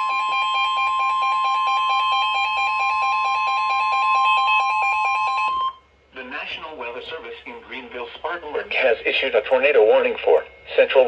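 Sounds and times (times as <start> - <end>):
loud steady high alert tone: 0.0 - 6.0.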